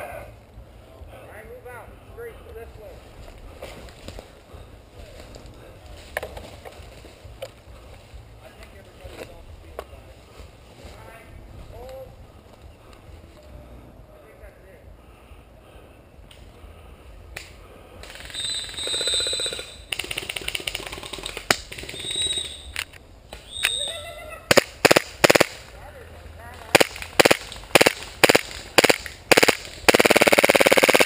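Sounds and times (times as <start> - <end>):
airsoft gun shots: 24.5 - 25.6, 26.7 - 31.0.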